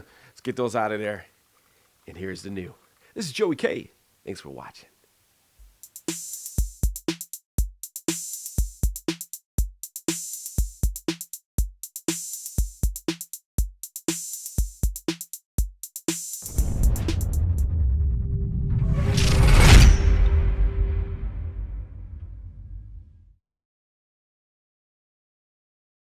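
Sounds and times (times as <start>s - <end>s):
drum machine beat: 5.6s - 17.7s
electronic music: 12.0s - 17.7s
heavy rumbling section: 16.5s - 23.2s.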